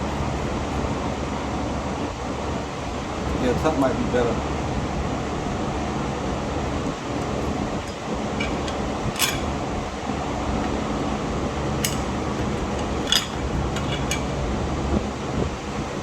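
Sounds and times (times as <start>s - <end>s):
steady fan-like hum: 0.0s - 16.0s
light metallic clicks and clinks: 7.8s - 9.6s, 11.8s - 14.5s.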